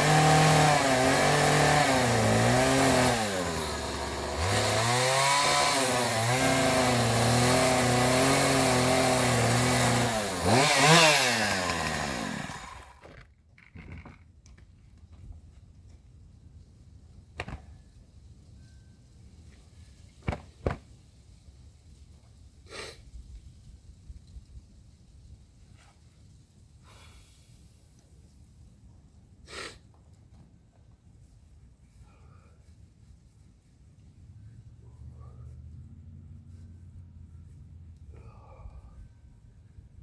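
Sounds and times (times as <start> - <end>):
small engine running: 0.0 - 13.1.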